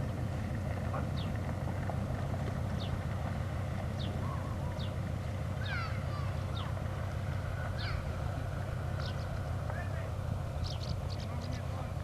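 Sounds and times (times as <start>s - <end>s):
diesel locomotive idling: 0.0s - 12.0s
bird chirping: 9.0s - 9.4s, 10.6s - 11.8s.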